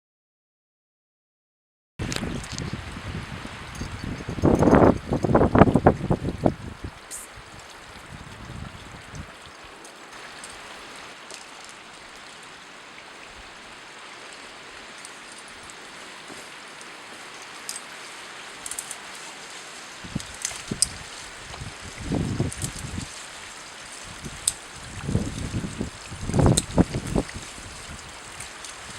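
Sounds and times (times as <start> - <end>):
water hissing: 2.1 - 28.9
faint ticks: 24.0 - 25.6.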